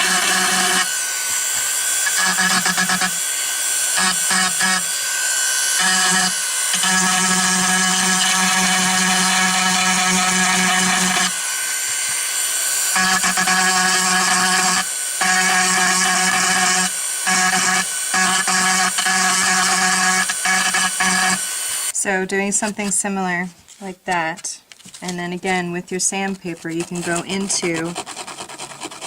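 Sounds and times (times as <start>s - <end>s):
grinding stone on plastic: 0.0s - 21.6s, 23.8s - 29.0s
rotary tool whine: 0.0s - 22.0s.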